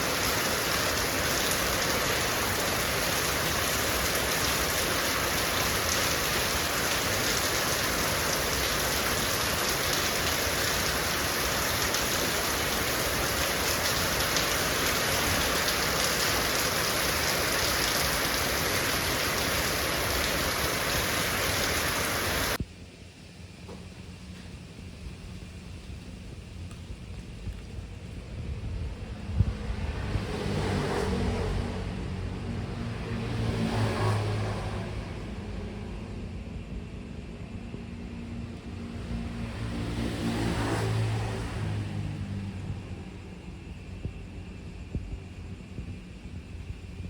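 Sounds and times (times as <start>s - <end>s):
heavy rain falling: 0.0s - 22.6s, 28.8s - 35.2s.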